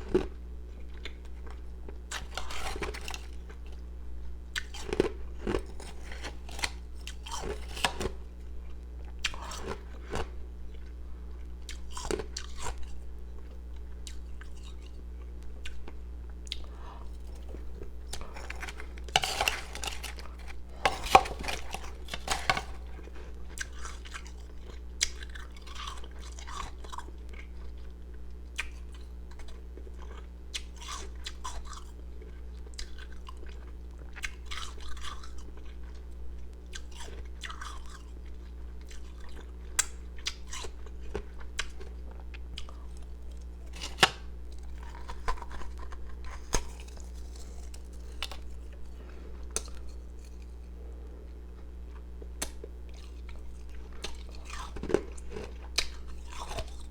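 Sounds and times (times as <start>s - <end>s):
steady low hum: 0.0s - 56.9s
person crunching ice: 17.0s - 24.3s.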